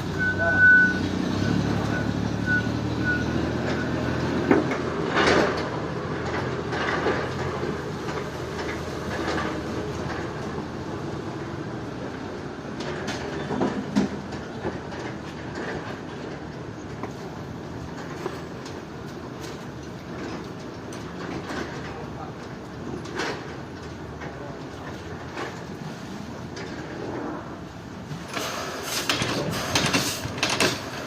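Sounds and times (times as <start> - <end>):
heavy machinery humming: 0.0 - 31.0
metallic clanks and knocks: 3.5 - 10.6.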